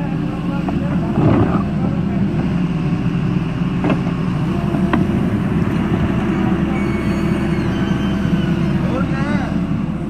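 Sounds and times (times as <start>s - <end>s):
diesel engine running under load: 0.0s - 10.0s.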